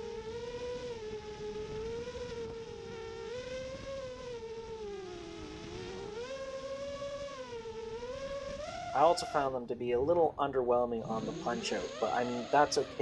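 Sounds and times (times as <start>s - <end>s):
quadcopter motors buzzing whine: 0.0s - 9.1s.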